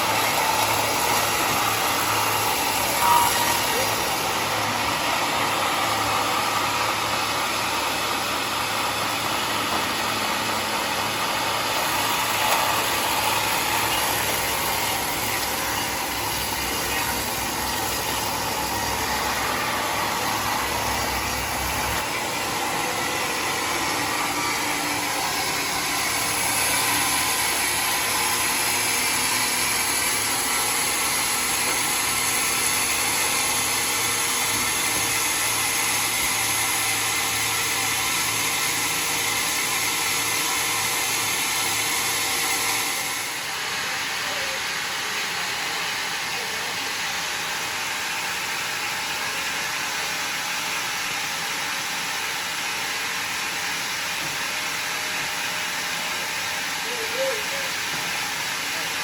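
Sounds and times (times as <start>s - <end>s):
sawmill machinery running: 0.0s - 59.0s.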